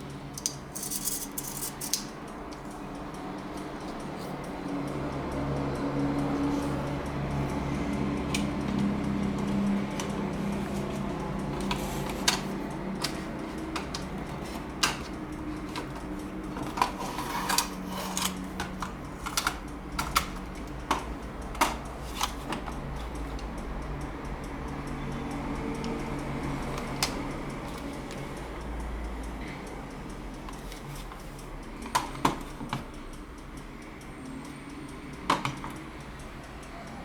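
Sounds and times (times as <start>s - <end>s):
toy revolver metal clicks: 0.3s - 2.2s.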